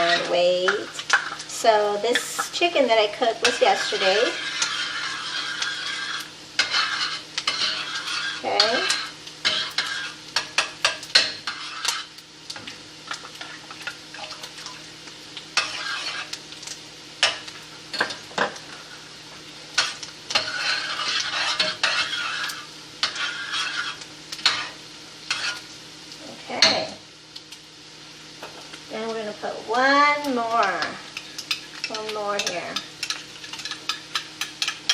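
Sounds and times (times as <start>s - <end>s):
utensil stirring in a pot: 0.0s - 26.7s, 28.4s - 34.9s
utensil clinking against a pot: 30.6s - 34.9s.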